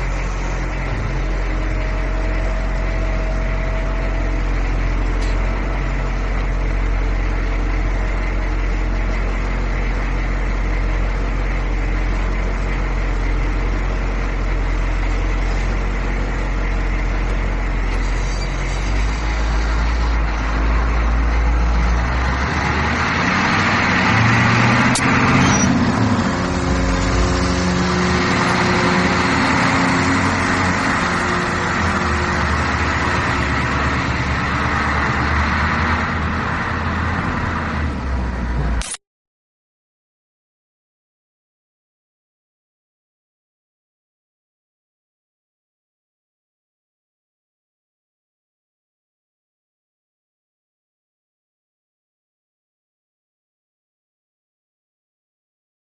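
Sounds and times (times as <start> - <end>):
bus engine humming: 0.0 - 39.0
rushing noise of moving bus: 0.0 - 39.0
brief click: 38.8 - 39.0.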